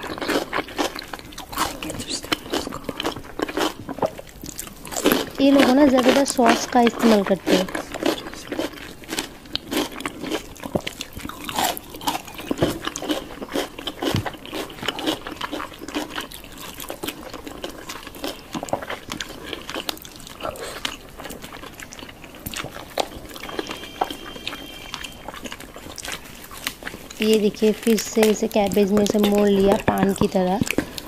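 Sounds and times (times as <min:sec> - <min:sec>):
crunchy chewing: 0:00.0 - 0:31.0
wet mouth sounds: 0:00.0 - 0:31.0.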